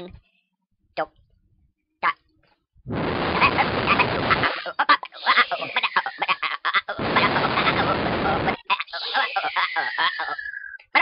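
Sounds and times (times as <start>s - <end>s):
dense noise hiss: 2.9s - 10.2s
stuttering squawk-like vocal fragments: 3.0s - 11.0s.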